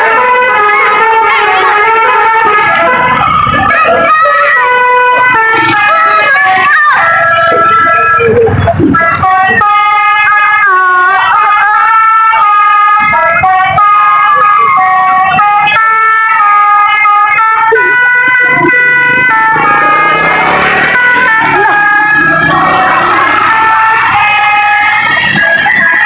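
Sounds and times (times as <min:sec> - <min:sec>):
musical bus horn playing tune: 0:00.0 - 0:03.2, 0:03.8 - 0:26.0
noisy rush: 0:17.5 - 0:26.0.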